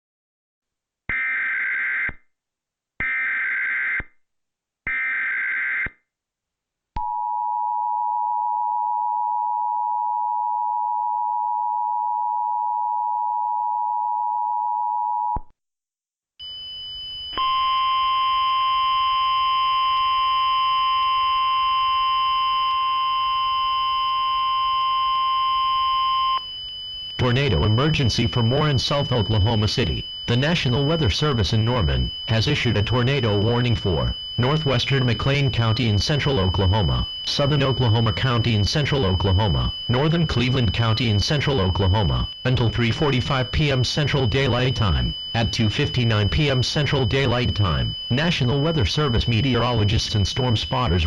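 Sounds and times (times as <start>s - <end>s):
digital data bursts: 27.2s - 51.0s.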